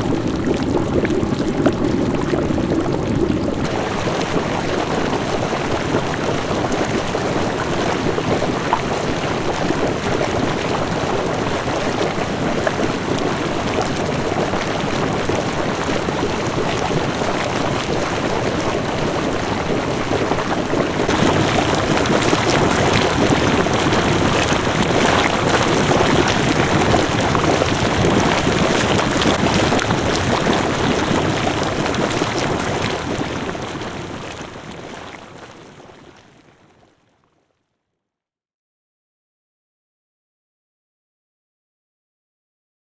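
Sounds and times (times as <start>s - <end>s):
water running and splashing: 0.1s - 35.6s.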